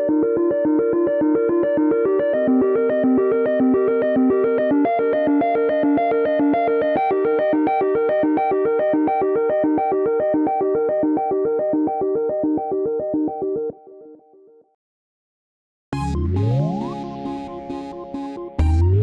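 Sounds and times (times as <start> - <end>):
synthesizer ringtone melody: 16.0 - 19.0.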